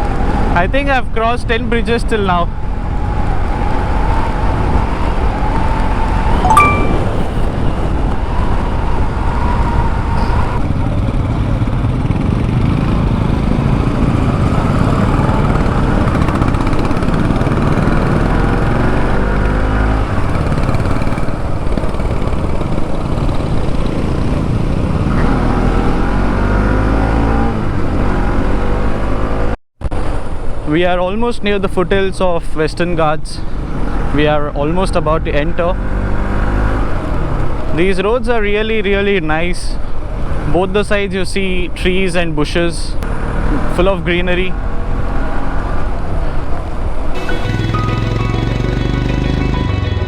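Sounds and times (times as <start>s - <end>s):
motorcycle engine running: 10.6s - 25.1s.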